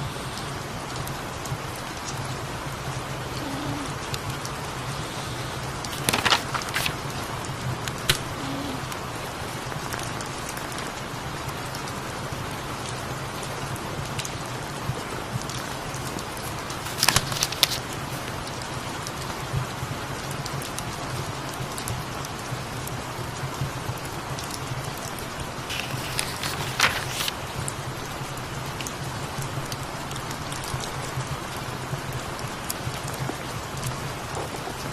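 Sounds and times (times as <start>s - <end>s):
rain falling: 0.0s - 34.9s
sharp crackles: 5.8s - 7.3s, 15.7s - 18.3s, 25.7s - 27.7s.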